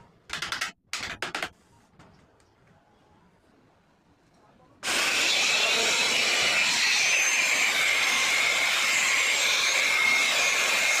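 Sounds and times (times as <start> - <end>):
electric hand planer whining: 4.9 - 11.0.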